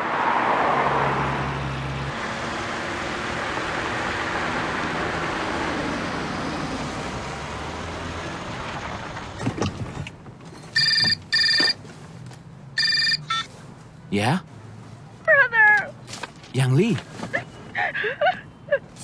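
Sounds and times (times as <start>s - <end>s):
telephone ringing: 10.8s - 11.8s, 12.8s - 13.5s.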